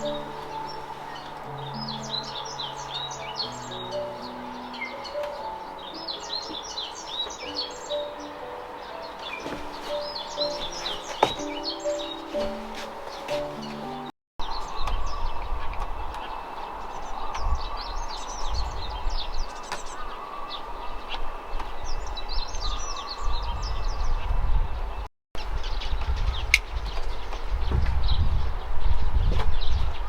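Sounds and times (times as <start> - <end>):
small birds chirping: 0.0 - 30.0.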